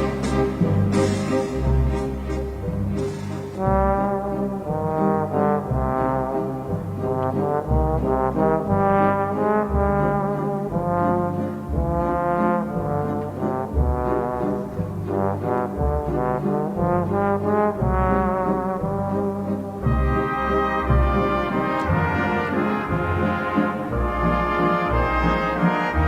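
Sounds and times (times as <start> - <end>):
deep pulsing bass: 0.0 - 26.0
melody of long held notes: 0.0 - 26.0.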